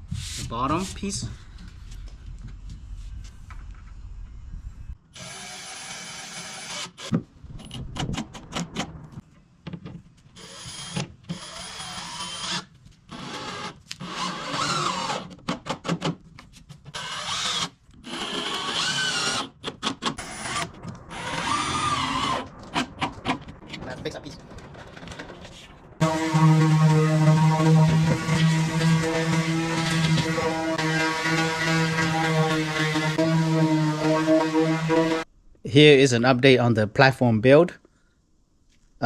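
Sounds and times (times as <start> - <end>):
low hum: 1.3 - 5.0, 20.2 - 35.8
power drill driving fasteners: 10.4 - 16.0, 16.9 - 23.1, 26.0 - 35.2.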